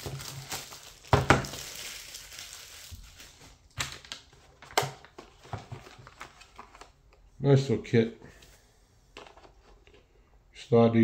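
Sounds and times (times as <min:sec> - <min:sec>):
plastic packaging tearing: 0:00.0 - 0:05.1
plastic packaging crinkling: 0:00.0 - 0:07.0.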